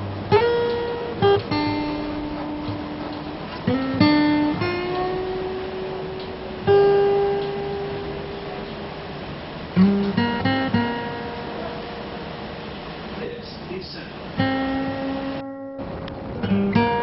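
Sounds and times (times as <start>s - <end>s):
acoustic guitar plucked notes: 0.0s - 17.0s.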